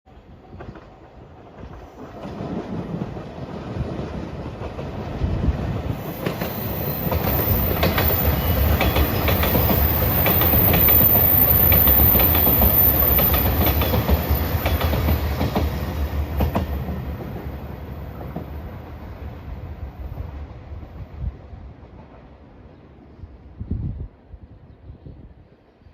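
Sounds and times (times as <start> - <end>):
wheels clicking over rail joints: 6.1 - 17.6.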